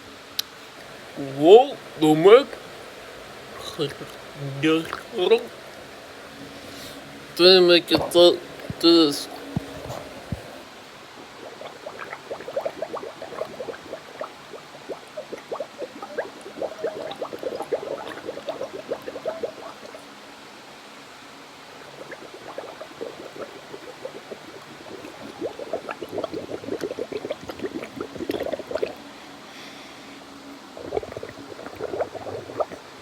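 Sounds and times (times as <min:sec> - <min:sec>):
person gargling water: 0:03.6 - 0:05.5, 0:11.2 - 0:20.0, 0:21.8 - 0:29.0, 0:30.8 - 0:33.0.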